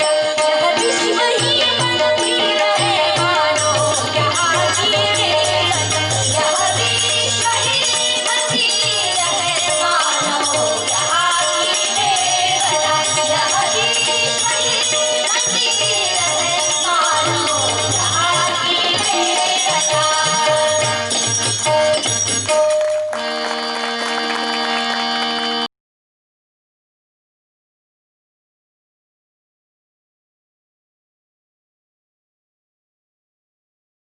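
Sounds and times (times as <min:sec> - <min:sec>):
instrumental accompaniment: 0:00.0 - 0:25.7
women's group singing: 0:00.1 - 0:21.4
jingling percussion rattle: 0:00.4 - 0:23.1.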